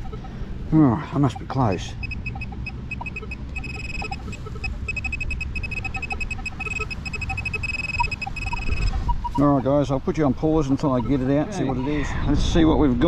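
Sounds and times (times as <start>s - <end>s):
metal detector beeping: 1.1s - 9.6s.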